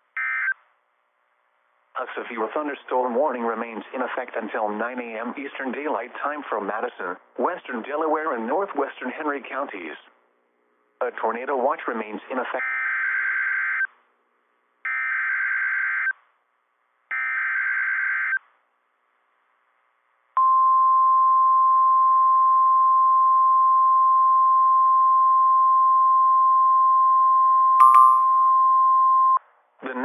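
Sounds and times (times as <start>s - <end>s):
single-pitch alarm tone: 20.4s - 29.4s.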